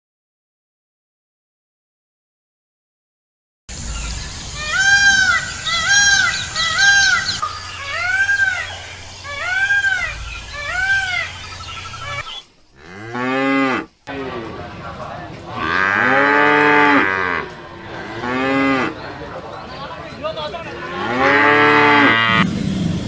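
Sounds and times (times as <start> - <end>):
animal calling: 4.0 - 22.4.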